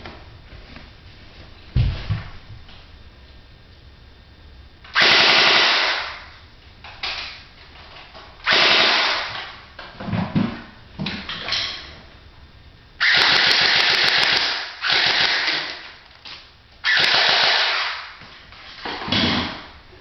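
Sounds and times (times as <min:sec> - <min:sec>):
airsoft gun full-auto bursts: 0:05.0 - 0:06.2, 0:08.5 - 0:09.3, 0:13.0 - 0:15.8, 0:16.8 - 0:18.2.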